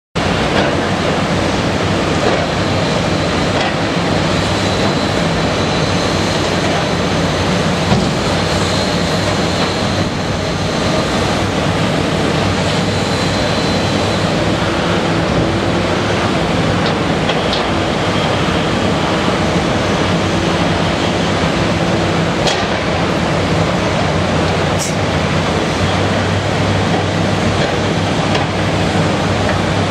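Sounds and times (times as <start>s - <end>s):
diesel engine running: 0.2s - 29.9s
high-pitched whine: 2.7s - 22.4s.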